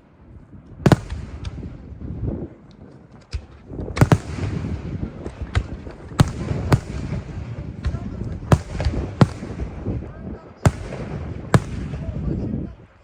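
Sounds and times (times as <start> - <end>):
crackling rumble: 0.0 - 13.0
firework shells bursting: 0.9 - 1.7, 3.3 - 9.8, 10.7 - 12.0.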